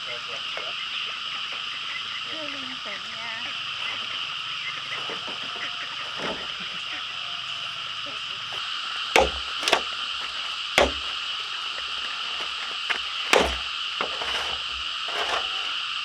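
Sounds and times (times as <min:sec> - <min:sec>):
frogs calling: 0:00.0 - 0:14.1
sharp chopping strikes: 0:09.2 - 0:11.2, 0:11.8 - 0:15.5.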